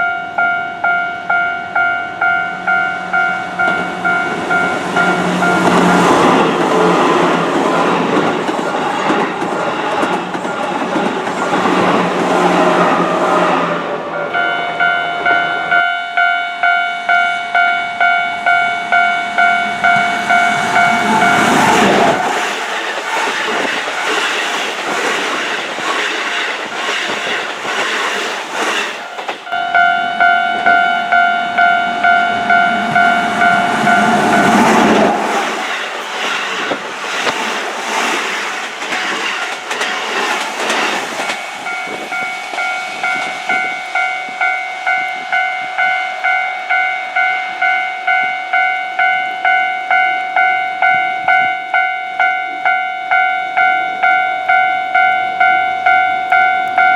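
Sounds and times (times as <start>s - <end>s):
level crossing warning bell ringing: 0.0s - 9.2s, 14.1s - 22.8s, 29.5s - 35.9s, 41.2s - 56.9s
train wheels clattering over rails: 3.6s - 13.1s, 19.9s - 29.5s, 32.8s - 43.8s.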